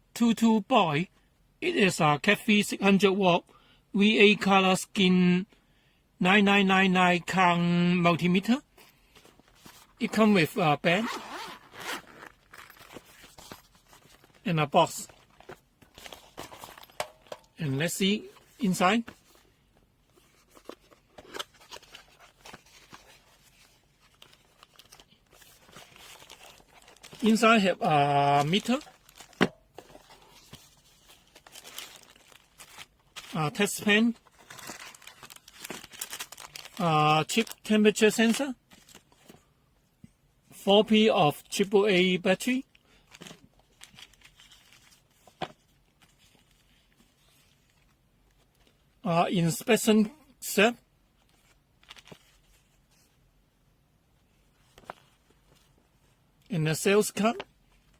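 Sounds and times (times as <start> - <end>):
packaging rustling: 11.0 - 17.6, 18.2 - 33.4, 34.1 - 36.8, 38.7 - 39.3, 43.1 - 47.9, 51.2 - 53.1.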